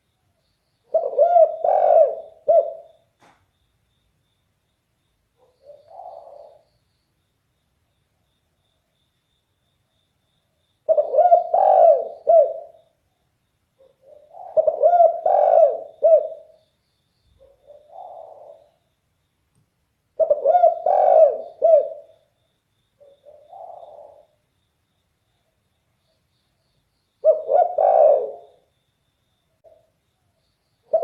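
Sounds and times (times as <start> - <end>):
dove cooing: 0.9 - 3.0, 5.4 - 6.6, 10.9 - 12.9, 13.8 - 16.6, 17.4 - 18.8, 20.2 - 22.2, 23.0 - 24.4, 27.2 - 28.7.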